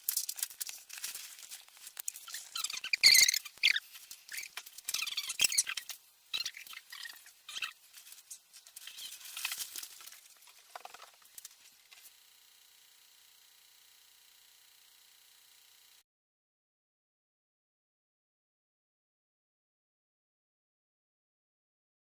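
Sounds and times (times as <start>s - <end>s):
rustling and scratching: 0.0s - 12.2s.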